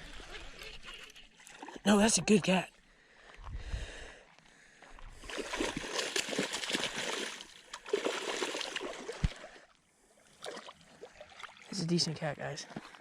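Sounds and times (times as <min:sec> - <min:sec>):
fish splashing in water: 0:05.2 - 0:09.7.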